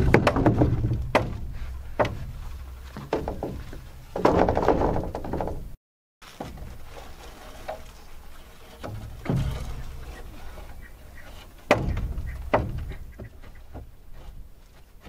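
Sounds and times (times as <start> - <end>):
wooden boards thudding: 0.0 - 15.0
scraping and handling noise: 6.2 - 15.0.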